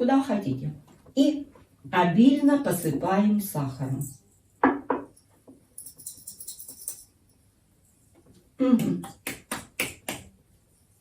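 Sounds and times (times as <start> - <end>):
container tapping and shaking: 4.8 - 7.1.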